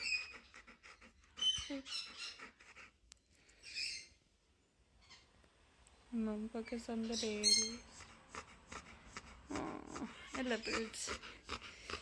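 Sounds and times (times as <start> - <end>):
birds chirping shrilly: 6.7 - 8.9.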